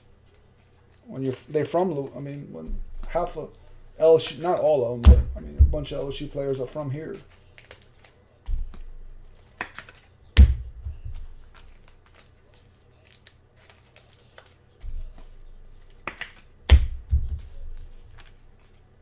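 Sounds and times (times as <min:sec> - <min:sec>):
cards clicking and rustling: 0:05.8 - 0:19.0.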